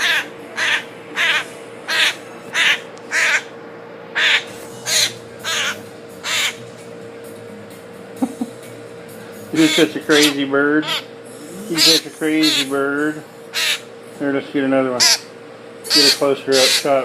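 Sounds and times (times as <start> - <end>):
baby bird begging calls: 0.0 - 3.5, 4.2 - 6.6, 9.6 - 11.1, 11.7 - 12.7, 13.5 - 13.8, 15.0 - 17.0.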